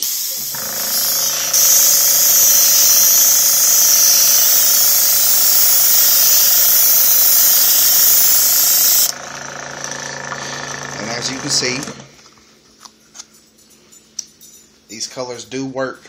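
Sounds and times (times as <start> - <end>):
paint spray gun hissing: 0.0 - 9.2
mechanical hum: 0.0 - 16.0.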